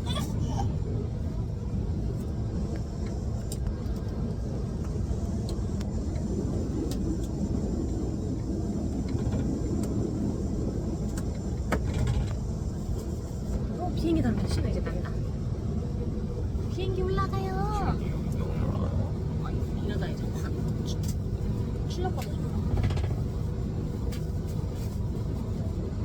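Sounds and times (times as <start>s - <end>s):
airliner engine rumble in cabin: 0.0s - 26.0s.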